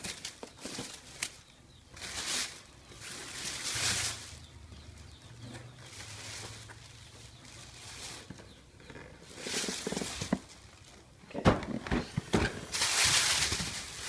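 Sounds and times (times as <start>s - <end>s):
packaging rustling: 12.0s - 14.0s.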